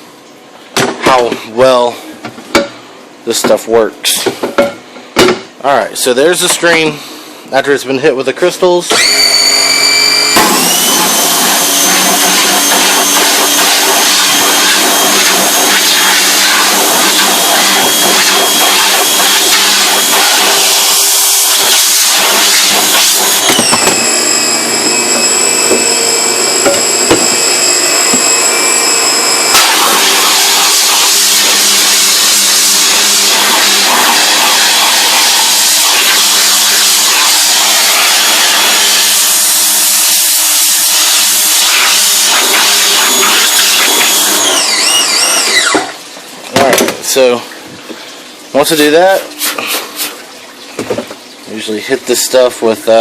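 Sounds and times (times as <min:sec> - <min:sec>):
pressure washer spraying: 0:09.3 - 0:45.6.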